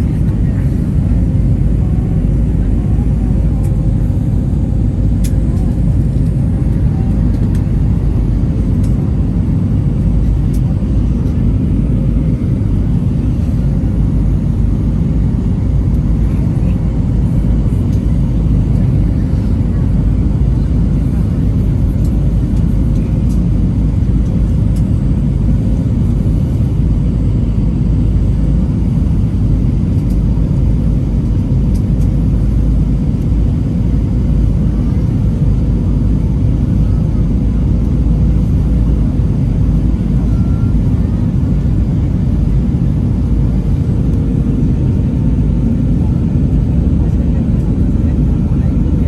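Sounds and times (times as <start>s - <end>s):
airplane cabin rumble: 0.0s - 49.0s.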